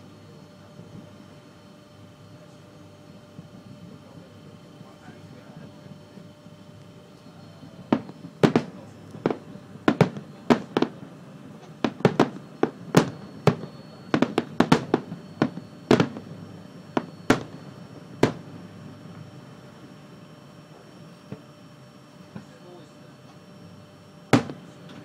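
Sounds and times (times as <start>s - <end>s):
fireworks bursting: 7.3s - 18.8s, 24.3s - 25.0s.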